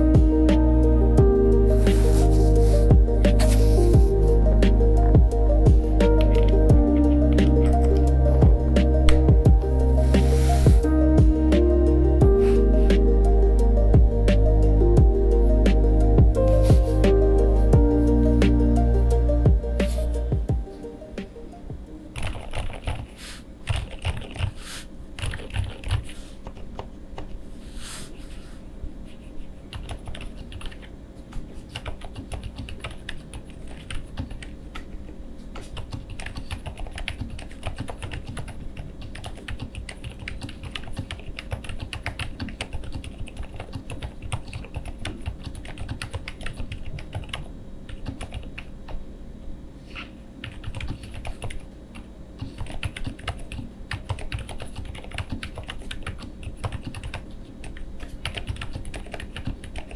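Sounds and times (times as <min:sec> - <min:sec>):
fast typing on mechanical keyboard: 0:22.1 - 0:24.6, 0:25.2 - 0:27.4, 0:29.7 - 0:30.9, 0:31.7 - 0:34.9, 0:35.6 - 0:48.7, 0:50.4 - 0:59.9.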